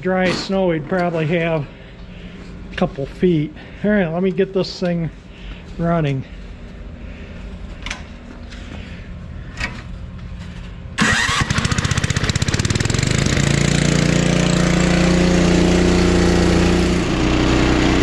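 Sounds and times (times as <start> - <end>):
snowblower engine starting: 11.0 - 18.0.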